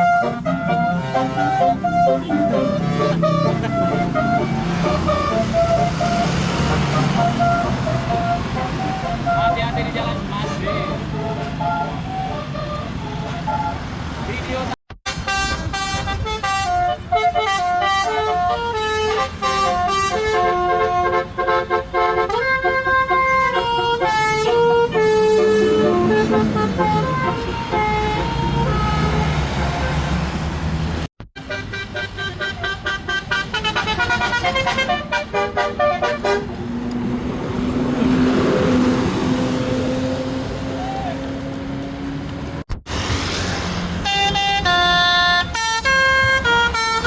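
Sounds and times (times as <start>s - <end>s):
horn long rising tone: 0.0s - 13.8s, 15.1s - 30.6s
bus musical horn playing stepped notes: 0.0s - 13.9s, 15.0s - 30.5s, 31.3s - 41.2s, 44.0s - 47.0s.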